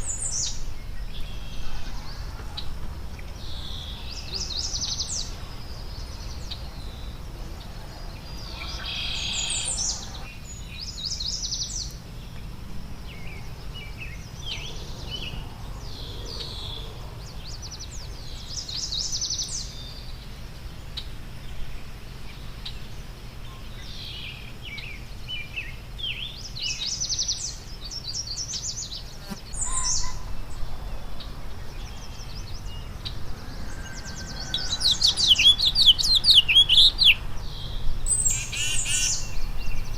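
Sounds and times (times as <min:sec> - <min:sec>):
songbirds chirping and trilling: 0:00.0 - 0:39.9
low background rumble: 0:29.7 - 0:39.9.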